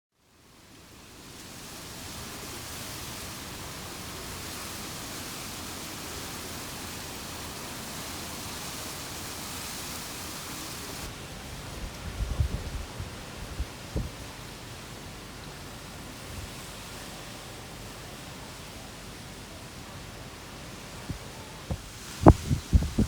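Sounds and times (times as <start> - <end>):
wind and rain hissing: 0.2 - 23.0
wind buffeting microphone: 11.3 - 14.5, 21.0 - 23.0.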